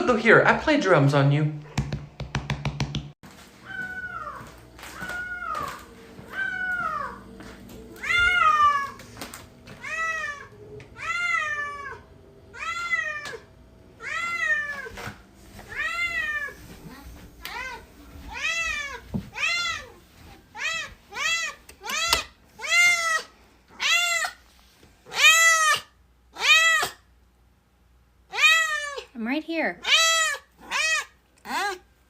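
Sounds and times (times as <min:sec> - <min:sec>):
cat meowing: 0:03.6 - 0:07.2, 0:08.0 - 0:09.0, 0:09.8 - 0:13.4, 0:25.1 - 0:27.0, 0:28.3 - 0:29.0, 0:29.8 - 0:31.8.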